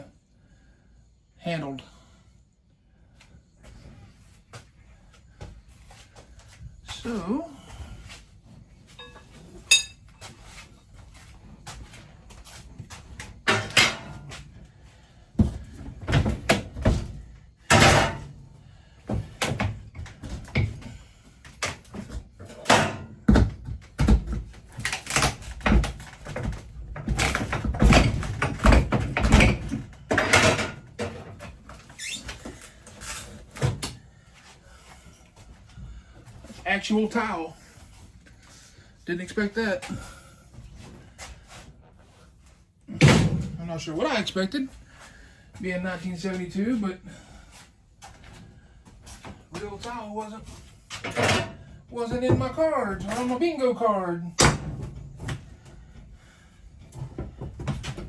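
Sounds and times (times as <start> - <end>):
scraping and squeaking: 31.7 - 33.6.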